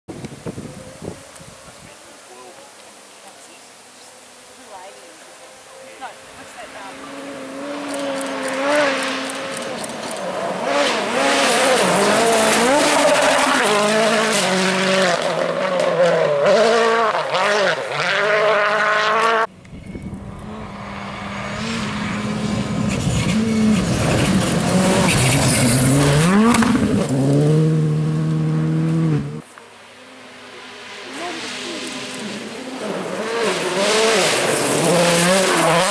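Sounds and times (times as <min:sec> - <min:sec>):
rally car engines at full throttle: 0:03.7 - 0:35.9
car revving through gears: 0:06.7 - 0:19.5, 0:20.1 - 0:29.5, 0:31.0 - 0:35.9.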